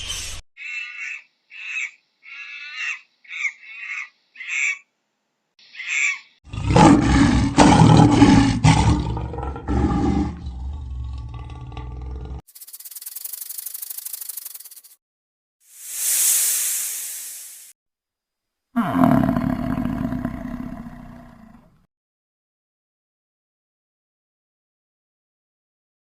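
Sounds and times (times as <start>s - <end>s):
big cat roaring: 6.5s - 12.4s, 18.8s - 21.8s.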